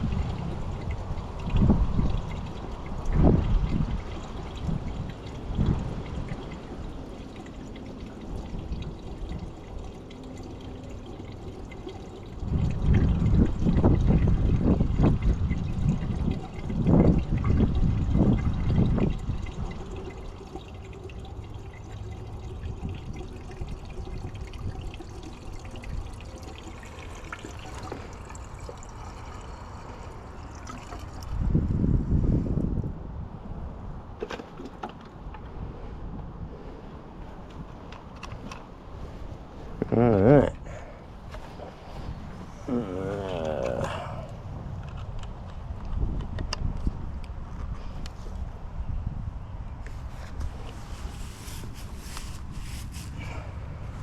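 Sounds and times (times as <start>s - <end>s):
fuel pouring into tank: 0.0s - 32.9s, 37.4s - 48.5s, 49.9s - 54.0s
low rumbling: 38.8s - 46.3s.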